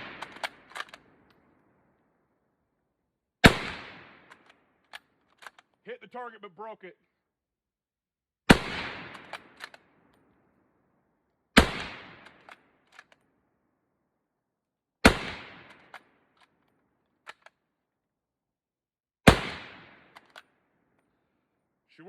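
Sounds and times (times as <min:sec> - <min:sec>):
rifle shots with ringing tail: 0:00.0 - 0:01.6, 0:03.4 - 0:04.4, 0:08.5 - 0:10.0, 0:11.6 - 0:12.5, 0:15.0 - 0:16.0, 0:19.3 - 0:20.2
rifle bolt clicks: 0:00.1 - 0:01.4, 0:04.3 - 0:05.7, 0:09.1 - 0:10.2, 0:12.2 - 0:13.2, 0:17.2 - 0:17.6, 0:20.1 - 0:20.5.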